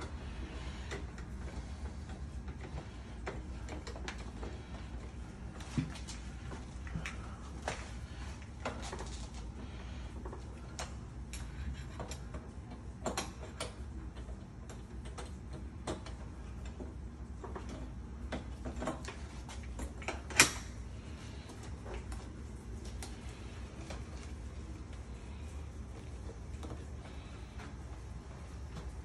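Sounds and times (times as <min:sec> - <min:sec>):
metallic clicks of tools and lock: 0:20.0 - 0:20.7.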